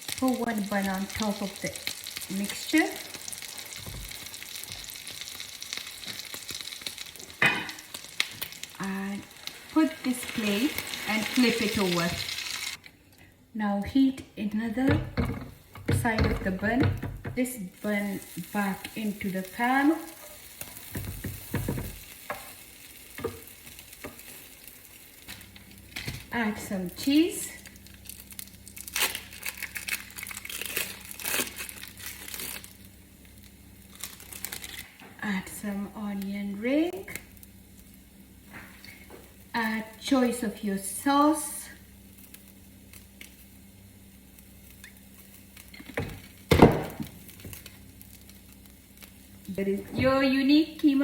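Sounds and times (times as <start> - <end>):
oil sizzling in a frying pan: 0.0 - 12.8, 17.7 - 34.9, 35.5 - 51.0.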